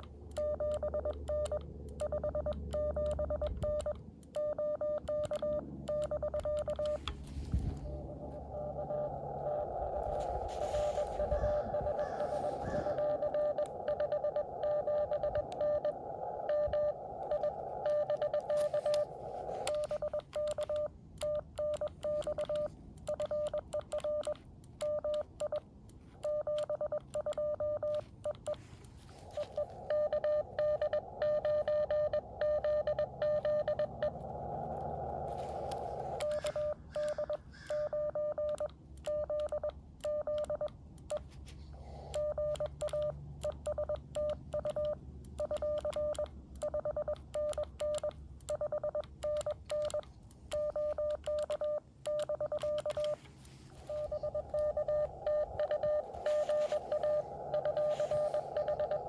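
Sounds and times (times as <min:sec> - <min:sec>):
morse code tones: 0:00.0 - 0:59.0
receiver hiss: 0:06.0 - 0:24.2, 0:27.1 - 0:37.9, 0:52.4 - 0:59.0
keying clicks: 0:42.1 - 0:53.2.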